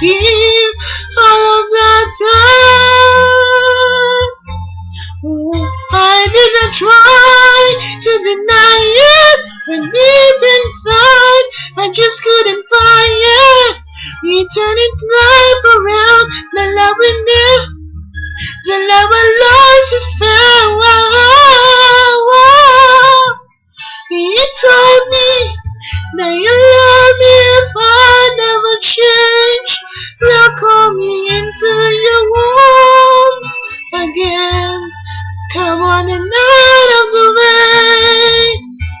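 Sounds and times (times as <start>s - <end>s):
backing track: 0.0s - 11.4s
woman singing pop ballad: 0.0s - 38.9s.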